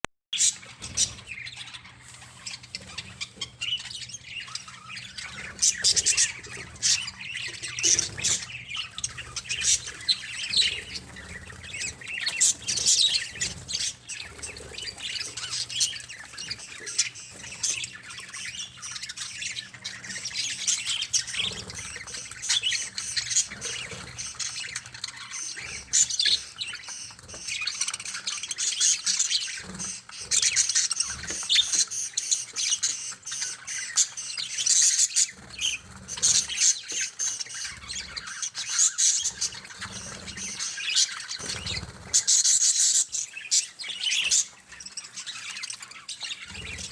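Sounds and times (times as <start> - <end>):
budgerigars chirping and squawking: 0.4 - 46.9.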